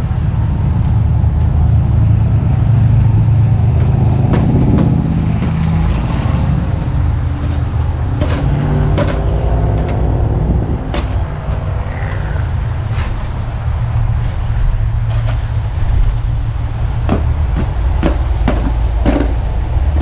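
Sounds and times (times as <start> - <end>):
snow plough engine running: 0.0 - 20.0
sharp knocks: 3.7 - 6.2, 7.3 - 12.4, 17.0 - 19.4.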